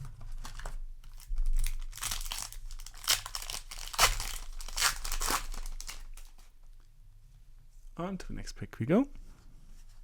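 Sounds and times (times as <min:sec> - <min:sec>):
plastic wrapper crinkling and tearing: 0:00.0 - 0:06.5.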